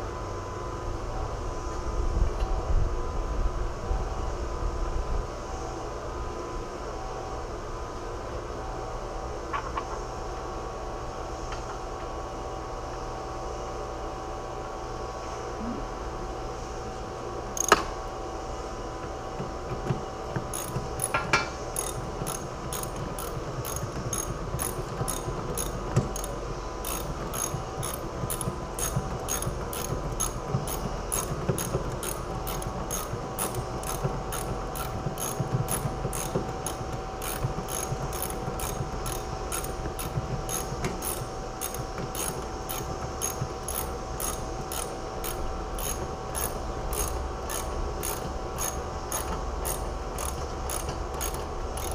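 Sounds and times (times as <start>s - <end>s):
ratchet wrench clicking: 17.6s - 17.8s, 19.9s - 51.9s.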